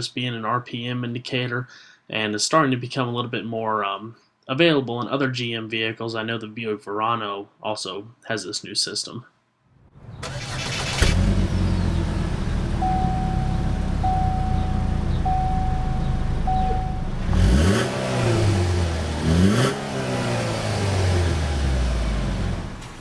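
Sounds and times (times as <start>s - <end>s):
car engine idling and revving: 10.0s - 23.0s
warning chime beeping: 12.7s - 17.8s.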